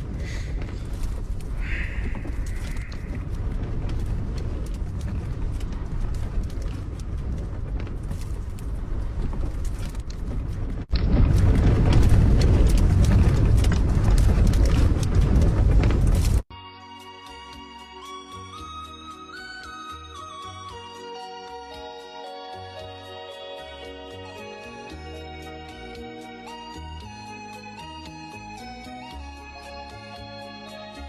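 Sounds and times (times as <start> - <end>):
strong wind on microphone: 0.0 - 16.5.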